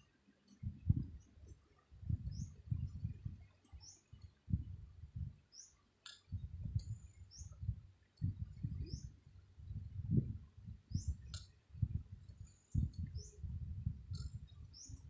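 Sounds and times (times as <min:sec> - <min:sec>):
small bird chirping: 0:02.2 - 0:04.5, 0:05.4 - 0:09.2, 0:10.8 - 0:15.0.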